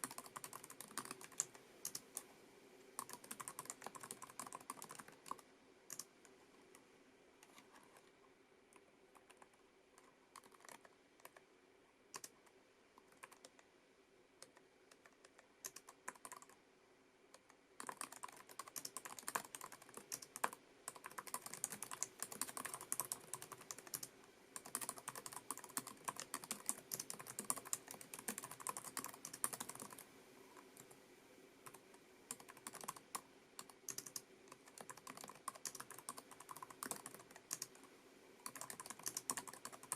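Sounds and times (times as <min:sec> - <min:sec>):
keyboard keys clicking softly: 0:00.0 - 0:02.3, 0:03.0 - 0:11.5, 0:12.1 - 0:13.7, 0:14.4 - 0:16.6.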